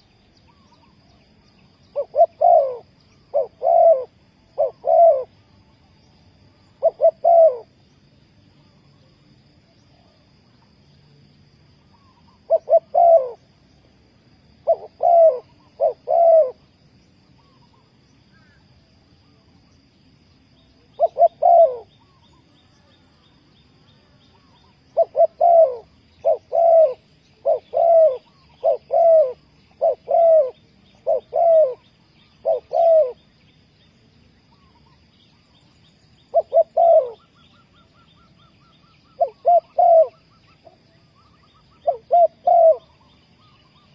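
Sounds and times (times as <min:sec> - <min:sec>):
dove cooing: 0:01.9 - 0:05.4, 0:06.7 - 0:07.8, 0:11.9 - 0:13.5, 0:14.6 - 0:16.7, 0:20.9 - 0:22.3, 0:24.3 - 0:33.3, 0:36.2 - 0:43.9.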